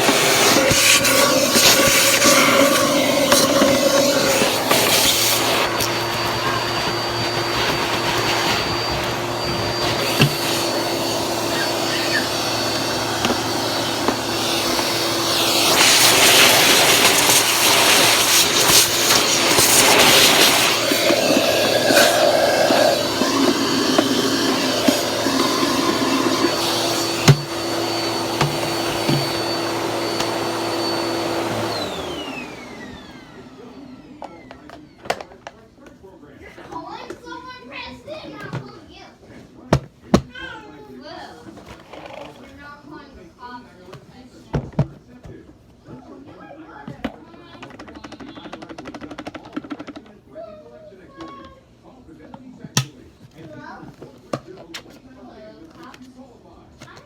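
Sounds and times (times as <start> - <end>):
motor winding down: 0.0 - 28.4
vacuum cleaner motor whine: 0.0 - 35.3.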